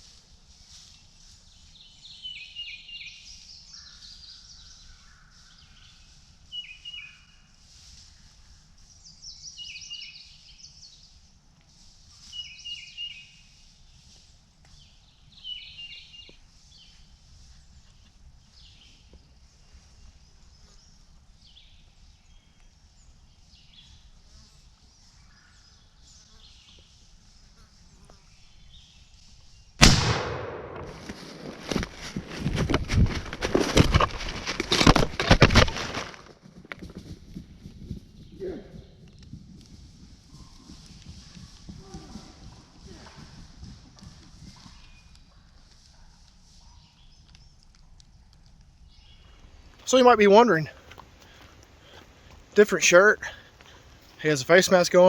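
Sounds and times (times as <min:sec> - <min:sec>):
songbirds singing: 0:01.5 - 0:07.5, 0:08.8 - 0:11.3, 0:12.2 - 0:29.8, 0:46.6 - 0:55.0
loud shotgun shot: 0:29.8 - 0:31.8.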